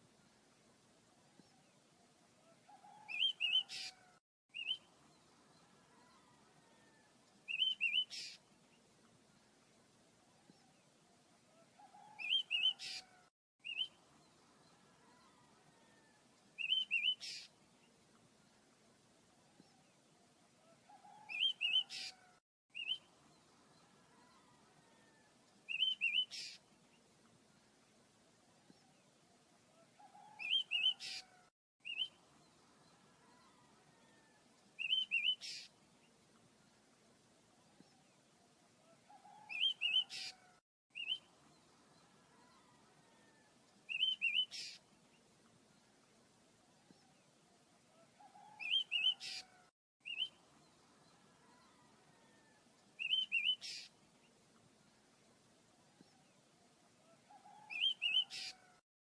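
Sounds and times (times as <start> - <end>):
small birds chirping: 48.0 - 55.0.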